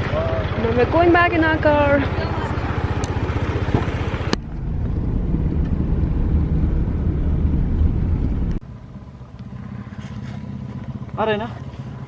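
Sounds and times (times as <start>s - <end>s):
car engine rumble and road noise: 0.0s - 12.0s
low hum: 0.0s - 12.0s.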